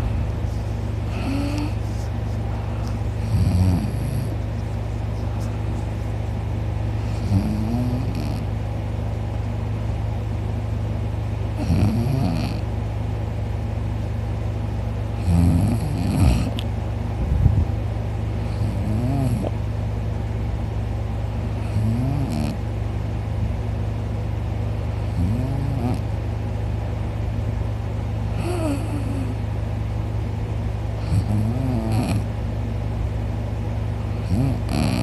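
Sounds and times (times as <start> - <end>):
steady low hum: 0.0 - 35.0
man snoring loudly: 1.1 - 1.8, 3.2 - 4.3, 7.1 - 8.5, 11.6 - 12.6, 15.2 - 16.6, 18.5 - 19.5, 21.7 - 22.6, 25.2 - 26.0, 28.4 - 29.4, 31.0 - 32.3, 34.2 - 35.0.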